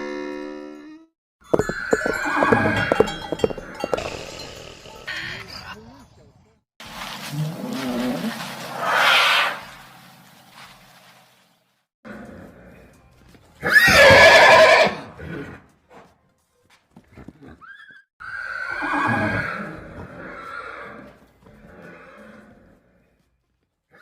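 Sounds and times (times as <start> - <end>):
horse snorting: 1.6 - 5.2, 17.0 - 17.8
horse neighing: 1.6 - 5.5, 13.6 - 15.6, 17.2 - 22.6.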